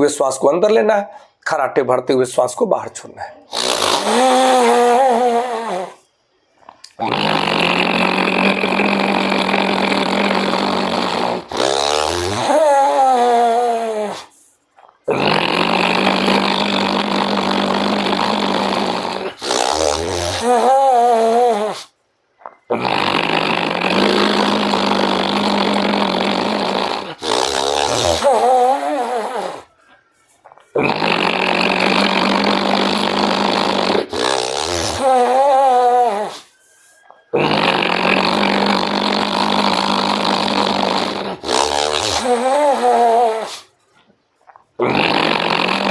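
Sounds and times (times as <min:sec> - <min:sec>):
deep rasping breaths: 0:03.5 - 0:06.1, 0:06.9 - 0:22.0, 0:22.7 - 0:29.8.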